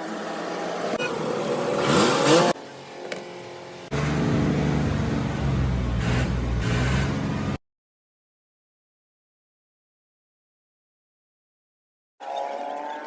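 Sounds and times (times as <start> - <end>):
tractor engine revving and idling: 0.9 - 2.6, 3.9 - 7.6.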